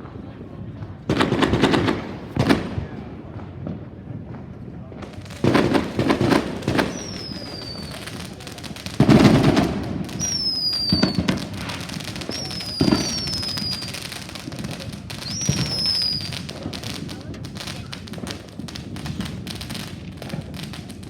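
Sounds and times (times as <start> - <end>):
firework bangs with crackling: 0.0 - 21.0
firework whistles falling in pitch: 6.8 - 8.3, 10.1 - 14.1, 15.2 - 16.5.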